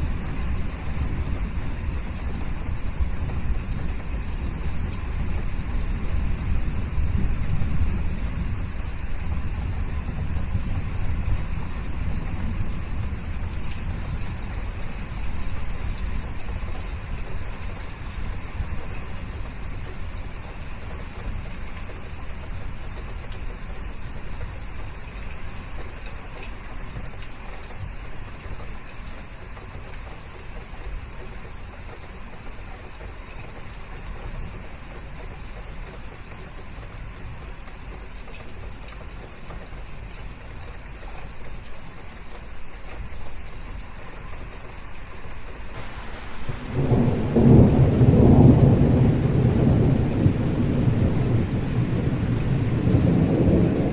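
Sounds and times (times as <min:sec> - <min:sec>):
steady rainfall: 0:00.0 - 0:53.9
thunder rumbling: 0:45.8 - 0:53.9.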